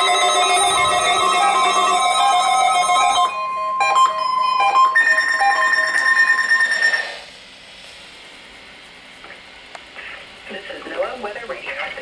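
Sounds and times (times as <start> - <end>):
faint radio hiss: 7.7 - 12.0.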